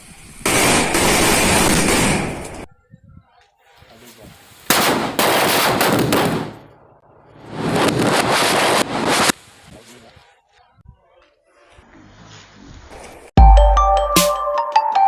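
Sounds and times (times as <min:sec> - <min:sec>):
firecrackers crackling: 0:00.0 - 0:02.7, 0:04.4 - 0:06.7, 0:07.3 - 0:10.2.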